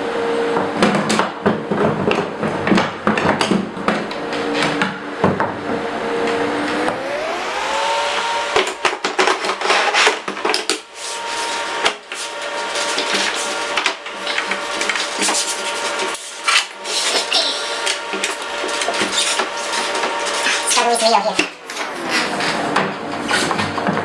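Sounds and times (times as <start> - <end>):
computer cooling fans whining: 0.0 - 24.0
handling clatter and knocks: 8.8 - 21.9.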